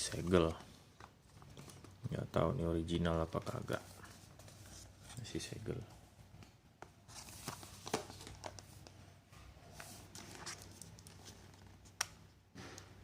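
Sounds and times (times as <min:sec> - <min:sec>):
soft rustling: 0:03.2 - 0:05.8.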